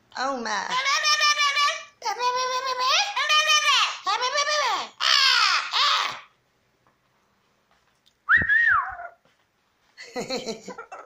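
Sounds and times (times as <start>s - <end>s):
parrot calling and whistling: 0.7s - 6.3s, 8.3s - 9.2s.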